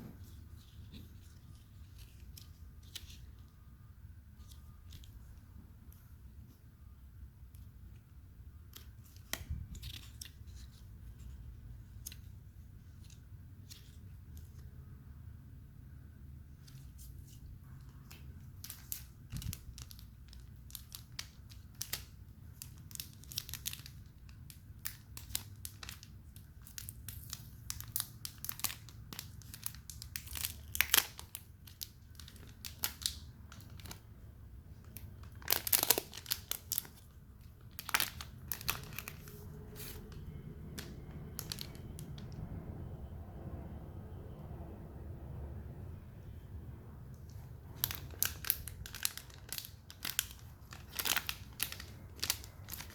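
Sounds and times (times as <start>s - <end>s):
packaging rustling and crackling: 16.6s - 34.0s, 34.8s - 42.3s, 47.3s - 52.9s.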